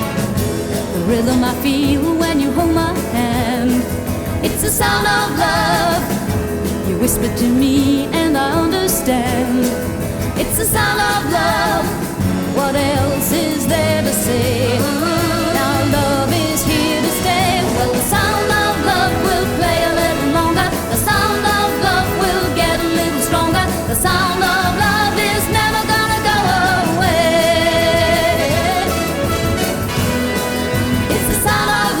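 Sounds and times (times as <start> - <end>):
pop song with woman singing: 0.0 - 32.0.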